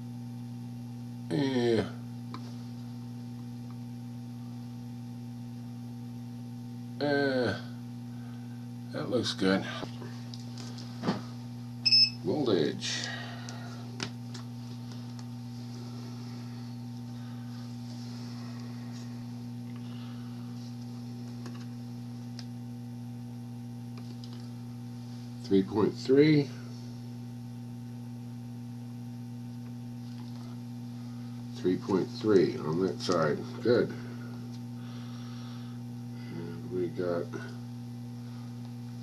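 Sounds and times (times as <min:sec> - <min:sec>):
low electrical mains hum: 0:00.0 - 0:39.0
person speaking a word: 0:01.3 - 0:02.0.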